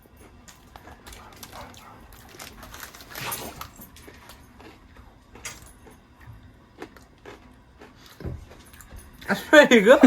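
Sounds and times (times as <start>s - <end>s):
snack packaging crinkling: 0.2s - 5.9s
packaging rustle: 1.1s - 4.0s.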